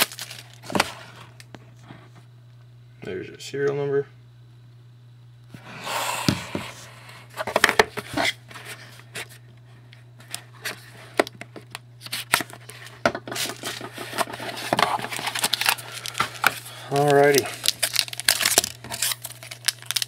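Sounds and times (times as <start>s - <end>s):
wrapping tearing: 0.0s - 0.6s, 14.4s - 20.0s
low electrical hum: 0.0s - 20.0s.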